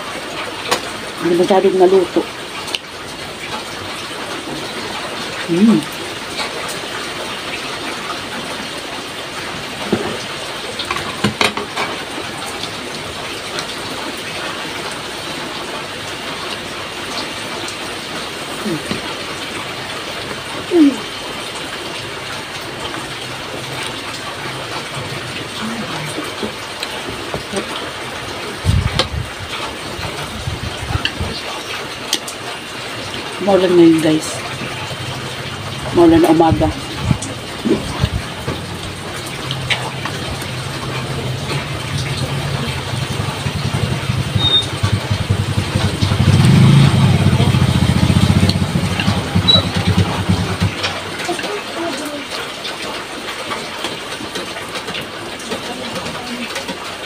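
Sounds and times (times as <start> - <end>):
steady rain hiss: 0.0 - 57.0
vehicle engine droning: 36.8 - 51.1.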